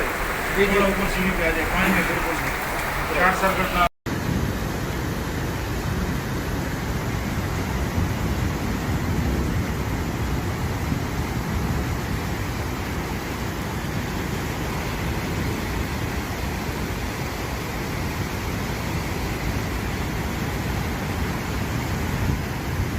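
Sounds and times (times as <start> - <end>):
floodwater rushing: 0.0 - 3.9.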